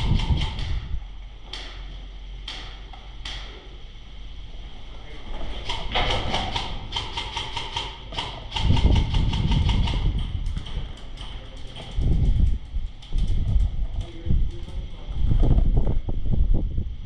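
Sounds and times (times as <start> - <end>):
mechanical whine: 0.0 - 17.0
airsoft gun rapid fire: 5.7 - 10.1
low rumble: 11.9 - 17.0.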